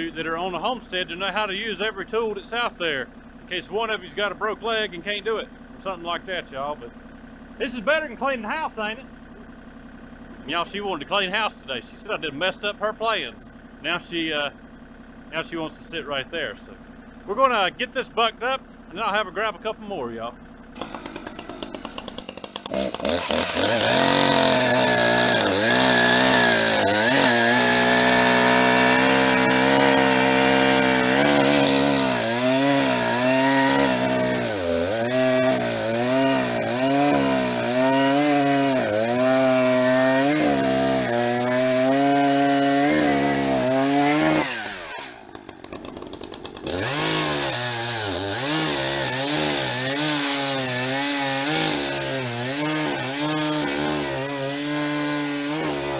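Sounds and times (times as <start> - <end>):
chainsaw cutting log: 20.8 - 55.9.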